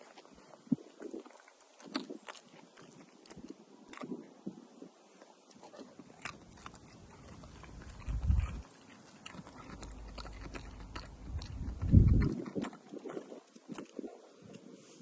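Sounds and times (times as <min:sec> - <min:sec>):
dog crunching cucumber: 0:00.0 - 0:04.6, 0:05.2 - 0:14.6
low rumbles: 0:07.0 - 0:08.7, 0:09.4 - 0:12.4.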